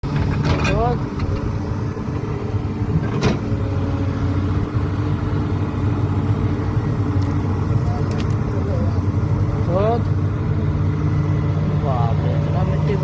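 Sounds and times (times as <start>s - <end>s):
excavator diesel engine running: 0.0s - 13.0s.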